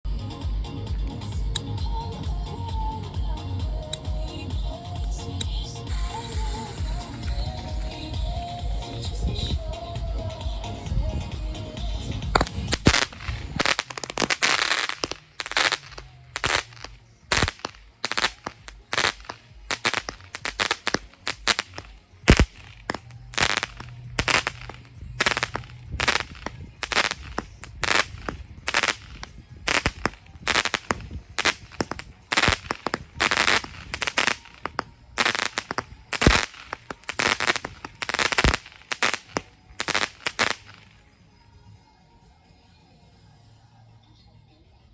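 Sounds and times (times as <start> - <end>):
firework cake bangs: 12.4 - 40.8.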